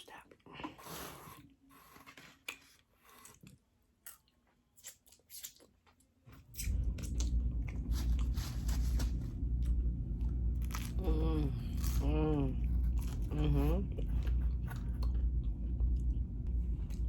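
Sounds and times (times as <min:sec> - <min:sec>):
loud low rumble: 0:06.6 - 0:17.0
chewing and biting food: 0:12.6 - 0:17.0.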